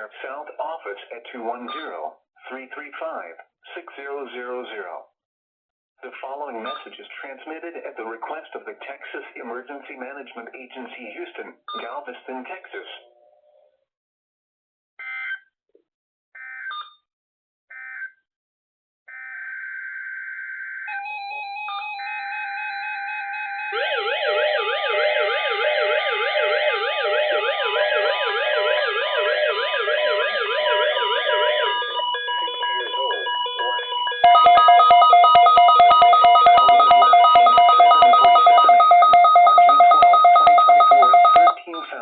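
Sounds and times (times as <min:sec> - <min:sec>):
steady electronic alarm tone: 0:19.1 - 0:41.6
two-tone beeping alarm: 0:20.8 - 0:41.6
digital data bursts: 0:30.2 - 0:41.6.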